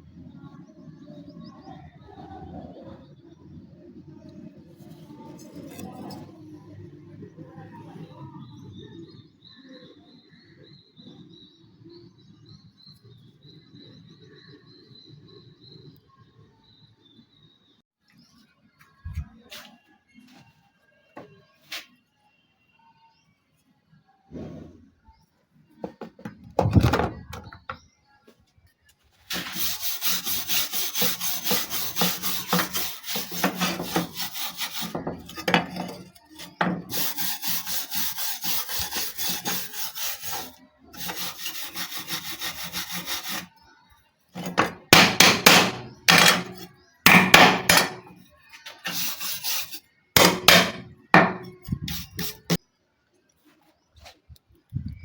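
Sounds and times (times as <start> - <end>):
hand rubbing knife blade: 29.3 - 43.5, 45.5 - 46.7, 48.7 - 52.6.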